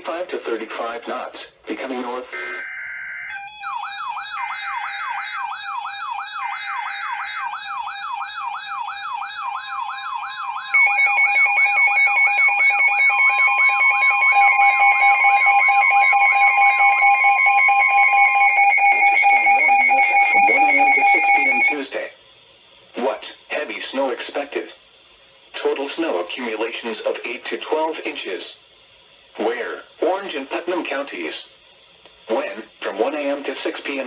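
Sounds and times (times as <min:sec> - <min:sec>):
screechy data bursts: 0:02.3 - 0:03.6, 0:13.6 - 0:21.8
steady alert tone: 0:02.3 - 0:09.3, 0:10.3 - 0:21.8
warbling siren-like alarm: 0:02.3 - 0:21.8.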